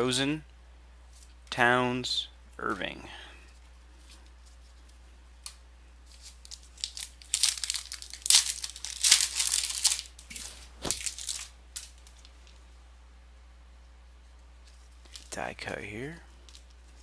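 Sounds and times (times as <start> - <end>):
wrapper tearing and crinkling: 6.1 - 12.4, 15.1 - 15.3.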